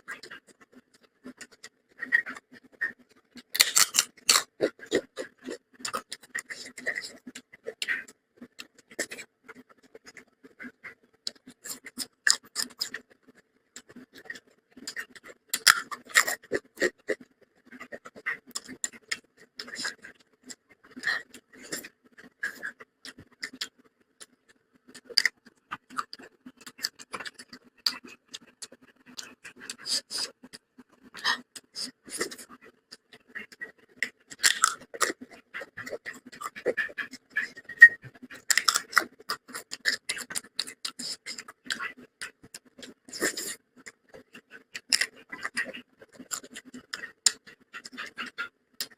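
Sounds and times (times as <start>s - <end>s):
person chewing wet food: 0.0s - 48.9s
wet lip smacks and clicks: 11.3s - 48.9s.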